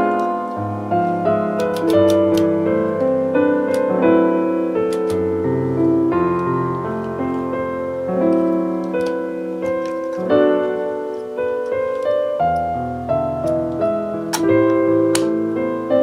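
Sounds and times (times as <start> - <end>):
gentle piano music: 0.0 - 16.0.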